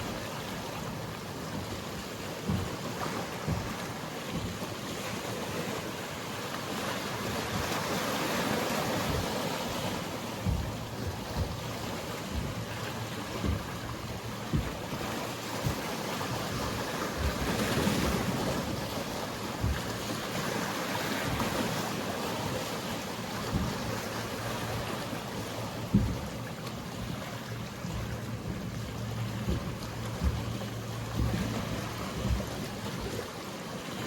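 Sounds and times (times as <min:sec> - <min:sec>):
sea waves washing: 0:00.0 - 0:34.0
wind buffeting microphone: 0:07.2 - 0:33.4.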